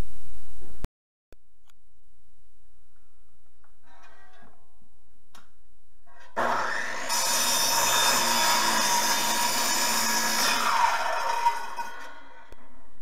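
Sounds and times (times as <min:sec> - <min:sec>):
power saw cutting wood: 0:06.4 - 0:12.5.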